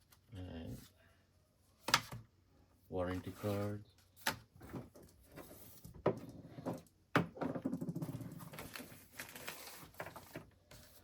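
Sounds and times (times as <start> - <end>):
paper rustling: 8.5 - 11.0.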